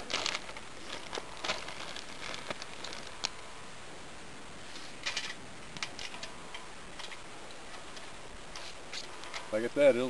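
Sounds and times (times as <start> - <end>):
fire pops and crackles: 0.0 - 3.5, 4.7 - 9.6
rustling: 0.0 - 3.5
fire hissing: 0.0 - 10.0.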